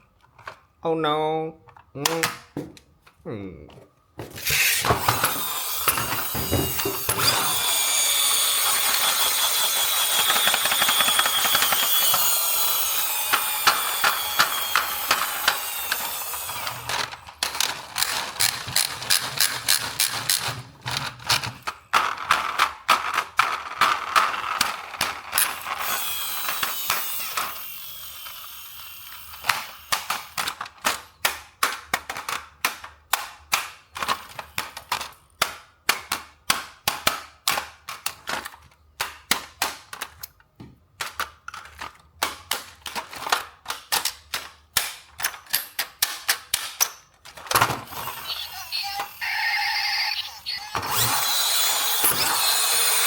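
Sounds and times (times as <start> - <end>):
toy car motor whirring: 4.3 - 31.4, 47.4 - 53.0
sharp ratcheting clicks: 16.9 - 20.5.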